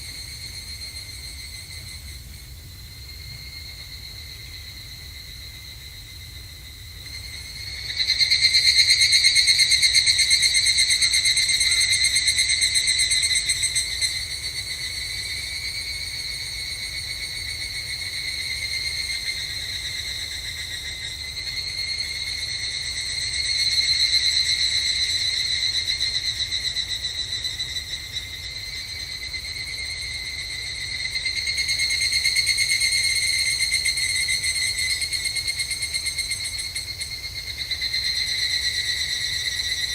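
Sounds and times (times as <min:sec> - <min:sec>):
cicadas calling: 0:00.0 - 0:39.9.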